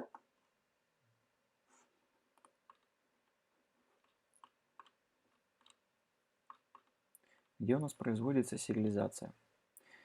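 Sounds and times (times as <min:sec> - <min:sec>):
computer mouse clicking: 0:02.3 - 0:07.6.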